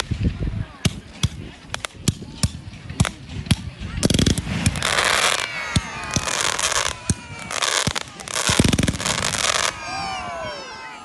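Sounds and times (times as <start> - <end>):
fireworks crackling and hissing: 0.0 - 10.1
fireworks bangs: 0.8 - 9.9.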